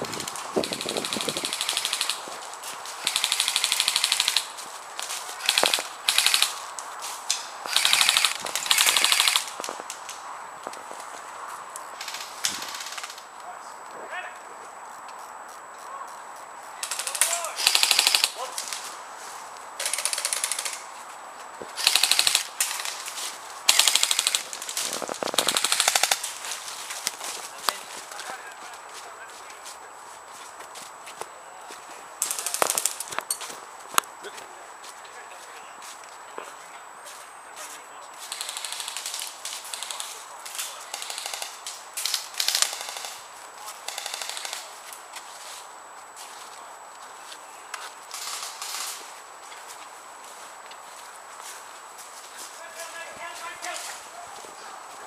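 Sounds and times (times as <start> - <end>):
airsoft guns firing bursts: 0.2 - 2.2, 3.0 - 4.5, 5.4 - 6.6, 7.7 - 9.6, 16.8 - 18.8, 19.8 - 20.8, 21.8 - 23.1, 23.7 - 26.3, 32.2 - 33.1, 38.3 - 40.1, 40.9 - 43.2, 43.9 - 44.7.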